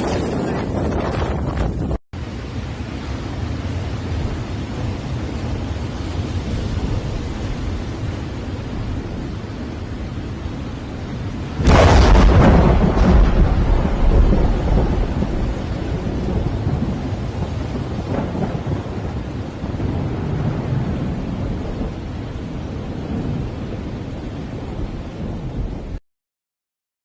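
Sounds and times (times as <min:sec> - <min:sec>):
thunder crack and rumble: 0:00.0 - 0:02.0, 0:11.5 - 0:26.0
steady rain: 0:00.0 - 0:26.0.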